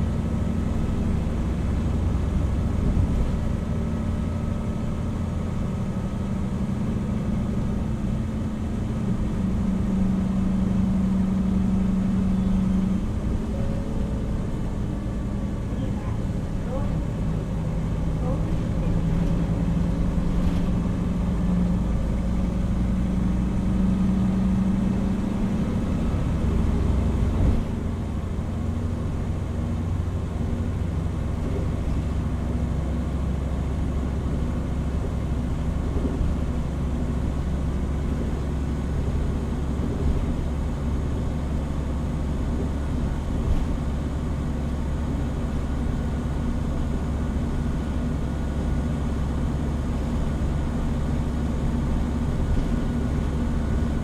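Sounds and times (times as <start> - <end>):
diesel bus engine humming: 0.0 - 54.0
road noise: 0.0 - 54.0.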